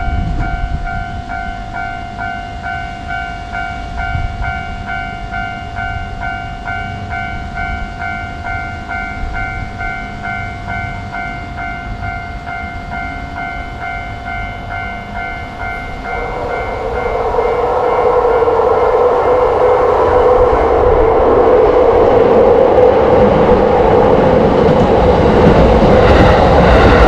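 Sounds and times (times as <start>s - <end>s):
crossing bell ringing: 0.0s - 27.0s
low rumble: 15.8s - 27.0s
loud rushing noise: 16.0s - 27.0s.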